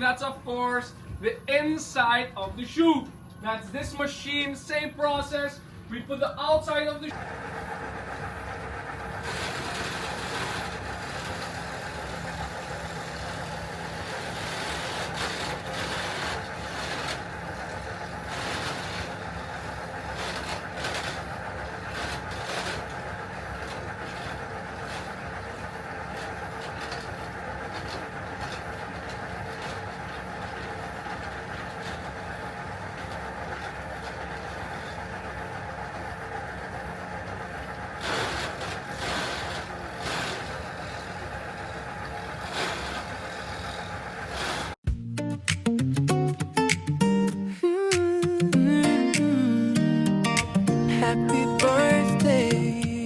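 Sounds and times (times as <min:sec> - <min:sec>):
carving machine motor and cutting: 0:06.2 - 0:44.8
short scrapes: 0:09.2 - 0:11.8, 0:14.0 - 0:17.3, 0:18.2 - 0:19.3, 0:38.0 - 0:41.2, 0:42.4 - 0:44.8.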